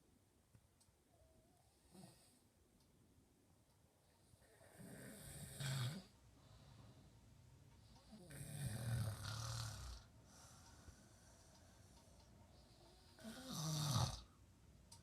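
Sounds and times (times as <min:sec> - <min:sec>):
baby snoring: 0:04.4 - 0:06.1, 0:08.0 - 0:10.1, 0:12.7 - 0:14.3.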